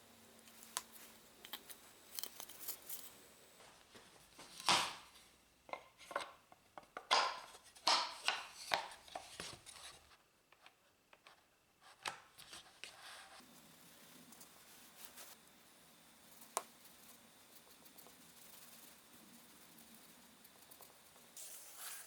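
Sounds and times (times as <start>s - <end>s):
wooden parts knocking: 5.7s - 8.9s.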